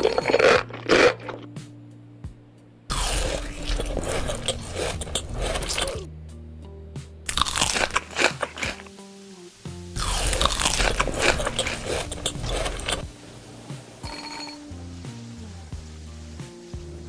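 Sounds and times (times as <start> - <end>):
crunching of crisp food being chewed: 0.0 - 1.6, 2.9 - 6.1, 7.3 - 8.9, 10.0 - 13.1.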